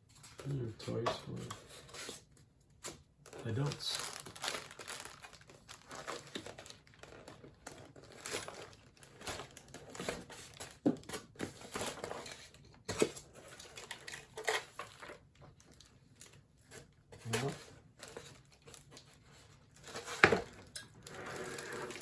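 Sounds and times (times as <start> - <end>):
packaging crinkling and rustling: 0.1 - 22.0.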